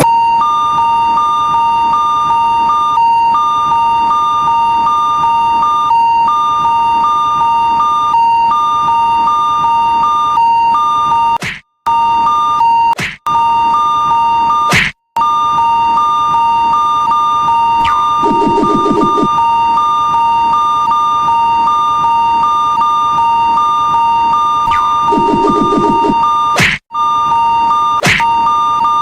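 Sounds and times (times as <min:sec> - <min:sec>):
electronic crossing warning bell: 0:21.7 - 0:26.5.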